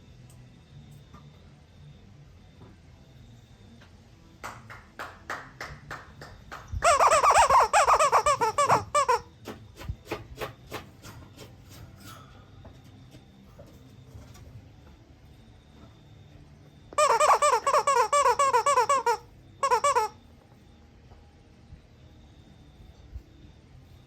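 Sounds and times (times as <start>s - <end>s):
squeaky toy squeaking: 6.8s - 9.3s, 17.0s - 20.2s.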